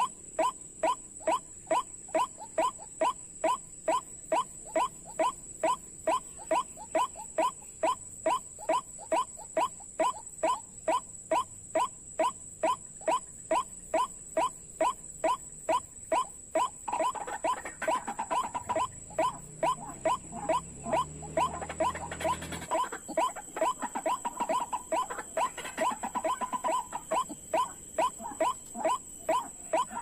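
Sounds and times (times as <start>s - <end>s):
waterhen calling: 16.9s - 30.0s.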